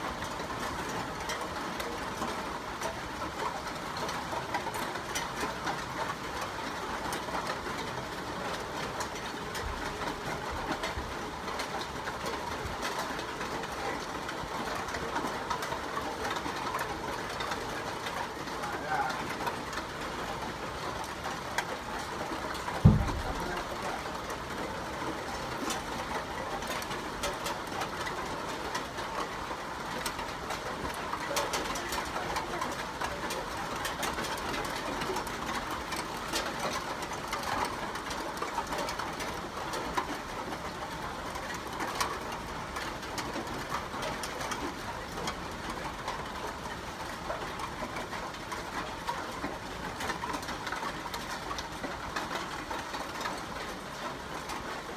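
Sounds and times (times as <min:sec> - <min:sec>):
rain falling: 0:00.0 - 0:54.9
short low thump: 0:22.8 - 0:23.6.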